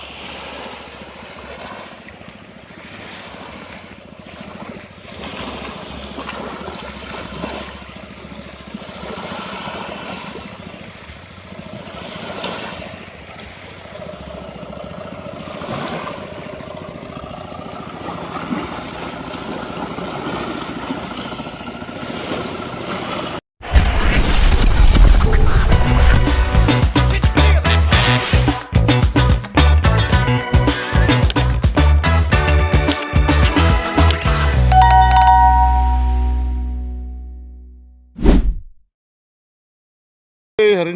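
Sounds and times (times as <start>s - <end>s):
lapping waves: 0.0s - 23.4s, 26.5s - 36.0s
loud background music: 26.5s - 34.6s.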